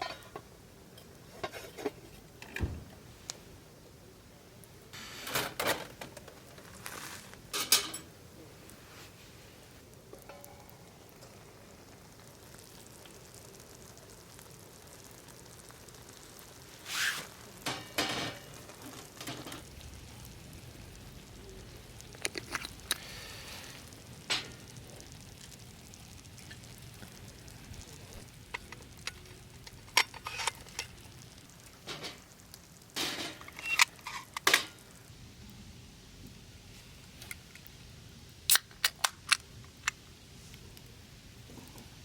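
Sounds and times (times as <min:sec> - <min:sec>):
cookware clinks and scrapes: 0:01.0 - 0:02.2
food sizzling in a pan: 0:04.9 - 0:42.0.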